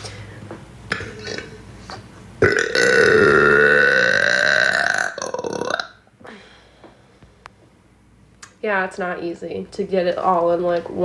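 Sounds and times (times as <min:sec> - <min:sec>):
woman burping: 0:00.9 - 0:01.6, 0:02.4 - 0:06.0.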